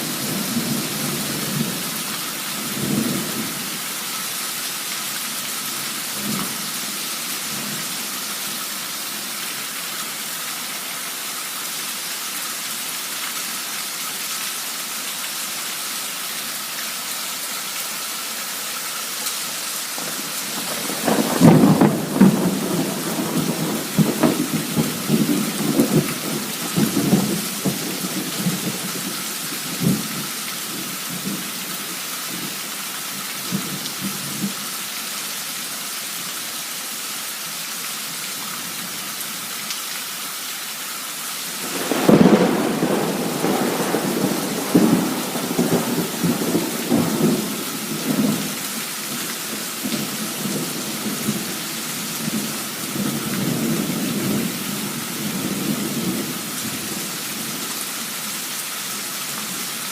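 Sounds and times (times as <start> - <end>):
torrential rain hissing: 0.0 - 59.9
thunder rolling: 20.0 - 28.9, 41.6 - 48.5.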